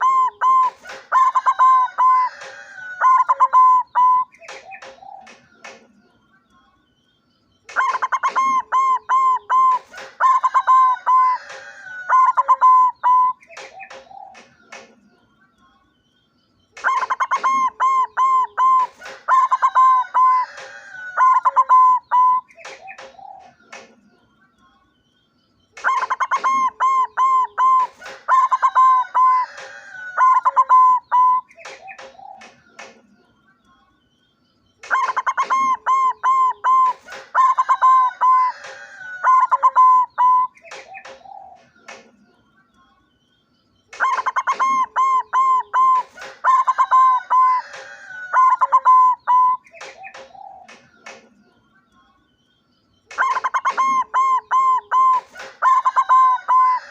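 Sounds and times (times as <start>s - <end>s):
dove cooing: 0.0s - 5.4s, 7.8s - 14.5s, 16.8s - 23.6s, 25.8s - 32.6s, 34.9s - 41.8s, 44.0s - 50.8s, 53.2s - 56.9s.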